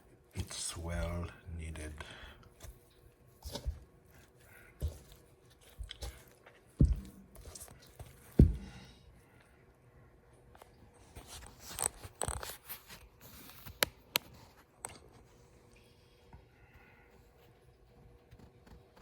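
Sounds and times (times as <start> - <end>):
dough squishing: 0.0 - 9.4
low thumps of dough: 4.6 - 9.0.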